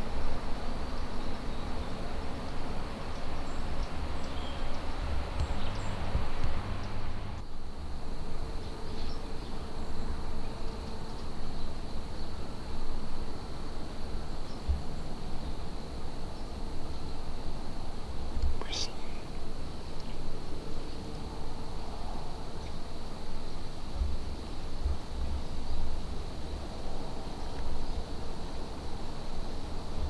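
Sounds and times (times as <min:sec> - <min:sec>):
low rumble of noise: 0:02.9 - 0:07.4.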